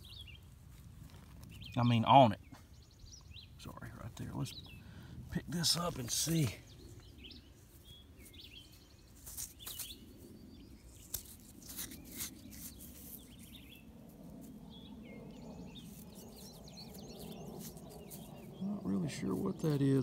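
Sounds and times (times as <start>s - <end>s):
low outdoor background: 0.0s - 20.0s
small birds chirping: 0.0s - 20.0s.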